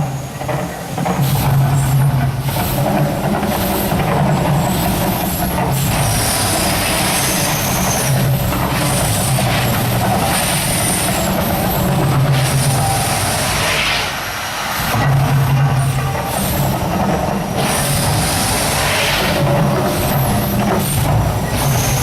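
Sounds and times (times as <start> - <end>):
rushing hiss: 0.0 - 22.0
loud rumbling roar: 5.5 - 22.0.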